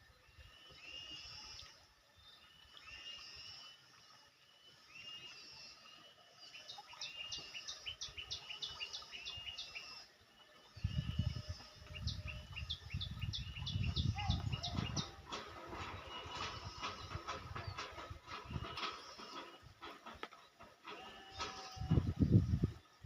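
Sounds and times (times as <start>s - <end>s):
bird chirping: 4.5s - 19.8s.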